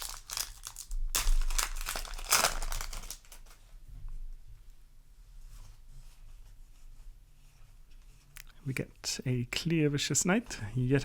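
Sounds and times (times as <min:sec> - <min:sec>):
foil wrapper crinkling and tearing: 0:00.0 - 0:03.6.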